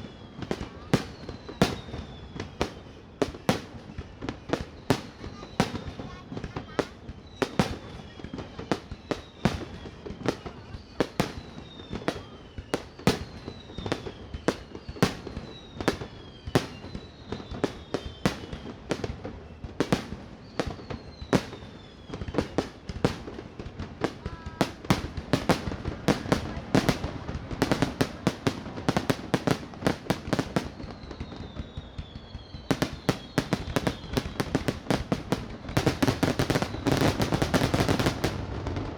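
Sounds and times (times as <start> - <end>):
faint falling whistles: 0.0 - 23.0, 27.7 - 38.2
fireworks shells bursting: 22.4 - 31.0, 32.6 - 38.5.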